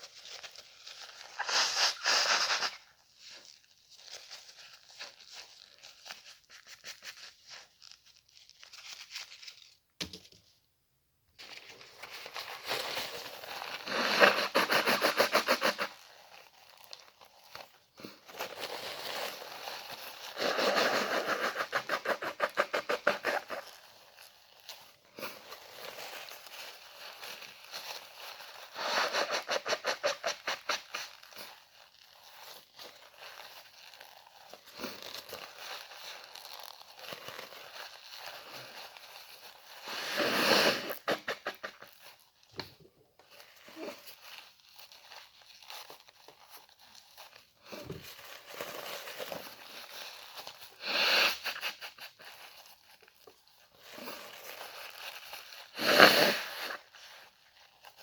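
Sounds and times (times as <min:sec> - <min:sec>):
tissue rustling: 0:00.0 - 0:10.0, 0:11.2 - 0:58.0
person blowing nose: 0:01.4 - 0:02.9, 0:13.7 - 0:15.9, 0:20.3 - 0:23.6, 0:28.7 - 0:31.1, 0:39.8 - 0:41.9, 0:50.7 - 0:52.2, 0:55.7 - 0:57.0.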